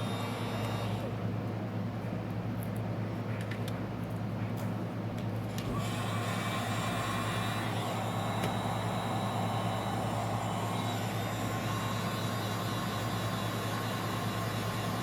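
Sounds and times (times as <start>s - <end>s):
hot-air blower running: 0.0s - 1.3s, 5.5s - 15.0s.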